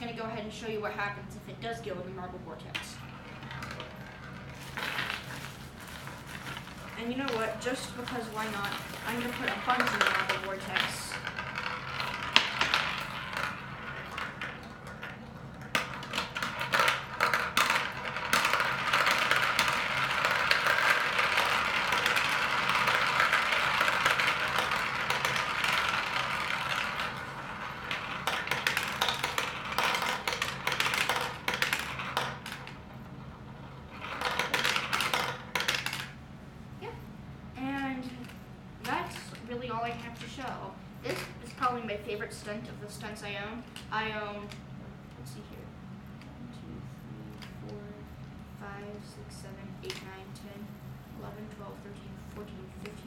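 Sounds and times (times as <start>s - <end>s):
steel marbles rolling rattle: 2.6s - 36.2s
marbles clicking through plastic: 2.7s - 32.8s, 33.6s - 36.2s.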